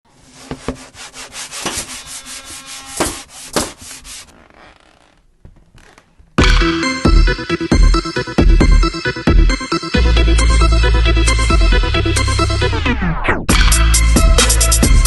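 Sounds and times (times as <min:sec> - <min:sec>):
quick rubbing strokes: 0:00.1 - 0:04.8
loud electronic music: 0:06.4 - 0:15.0.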